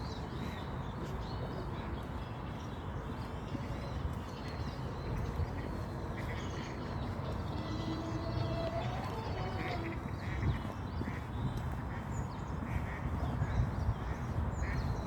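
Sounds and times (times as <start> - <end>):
low outdoor rumble: 5.0 - 11.2
faint bird calls: 6.2 - 11.2.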